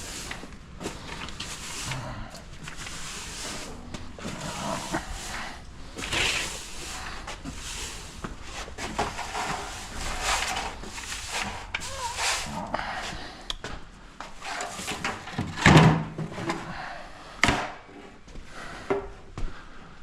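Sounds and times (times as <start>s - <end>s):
broom sweeping floor: 0.0s - 13.4s, 14.2s - 15.2s.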